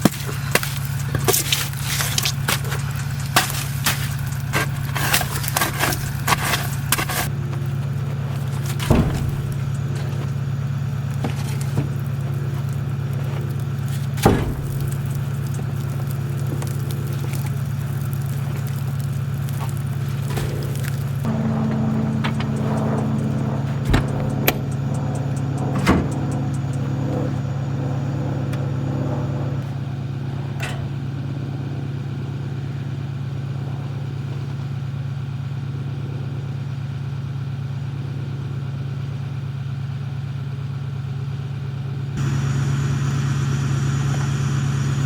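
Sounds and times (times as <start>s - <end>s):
thumps: 0.0s - 27.4s
motor humming: 0.0s - 36.3s, 42.2s - 45.0s.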